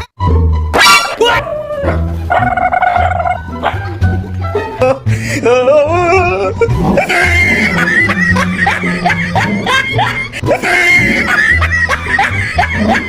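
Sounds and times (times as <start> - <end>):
high-pitched cries or laughter: 4.8 - 13.0.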